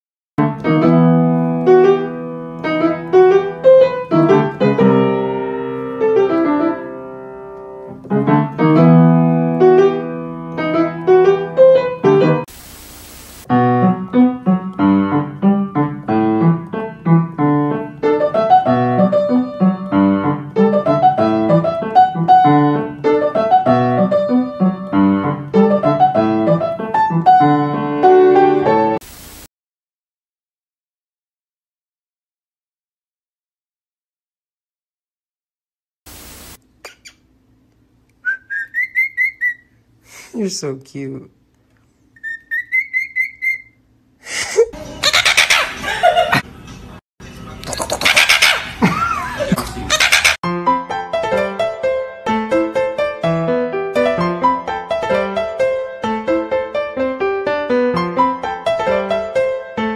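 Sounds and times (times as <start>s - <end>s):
lively piano music: 0.4s - 12.5s, 13.4s - 29.0s, 49.8s - 59.9s.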